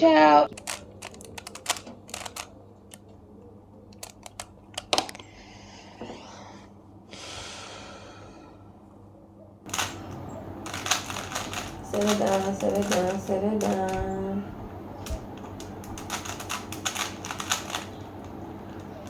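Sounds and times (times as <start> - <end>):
plastic cube clicks turning: 0.5 - 3.1, 3.9 - 5.2.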